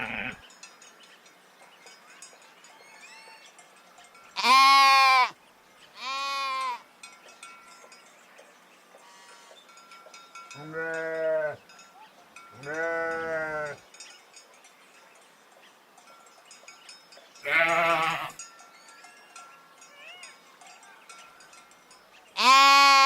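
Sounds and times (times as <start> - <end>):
sheep bleating: 0.0 - 0.4, 4.4 - 5.3, 6.0 - 6.8, 10.6 - 11.6, 12.6 - 13.8, 17.4 - 18.4, 22.4 - 23.0.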